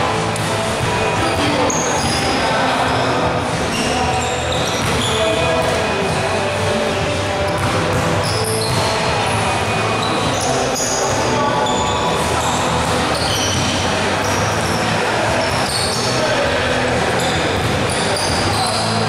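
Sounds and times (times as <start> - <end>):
sneakers squeaking: 0.0 - 19.0
basketball bouncing on court: 4.5 - 11.3.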